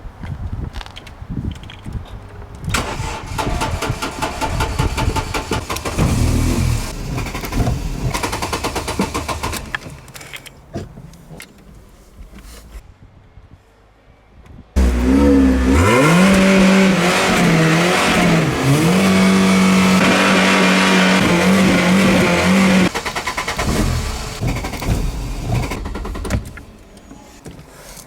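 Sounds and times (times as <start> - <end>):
engine briefly firing: 2.7 - 9.8
engine cranking on starter: 2.7 - 10.7, 14.8 - 27.4.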